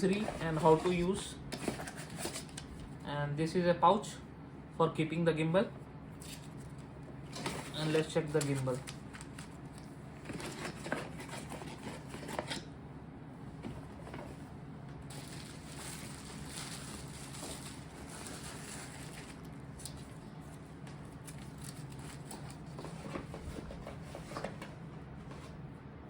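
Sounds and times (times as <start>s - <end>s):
packaging rustling and crinkling: 6.4s - 12.6s, 15.0s - 24.7s.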